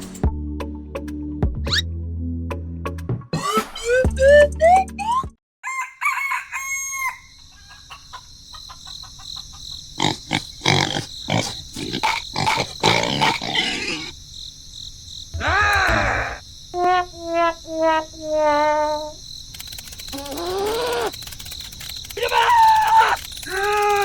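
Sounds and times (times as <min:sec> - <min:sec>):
chickens clucking: 0:07.5 - 0:09.7.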